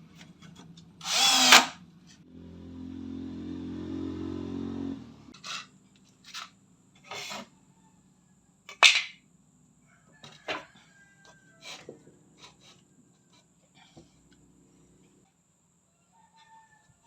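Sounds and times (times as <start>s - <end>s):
power drill running: 1.0s - 1.8s.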